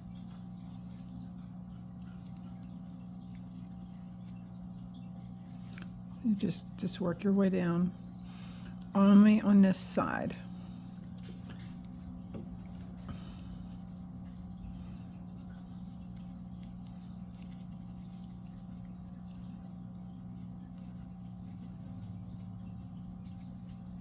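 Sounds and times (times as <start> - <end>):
steady low hum: 0.0 - 24.0
soft rustling: 8.2 - 24.0.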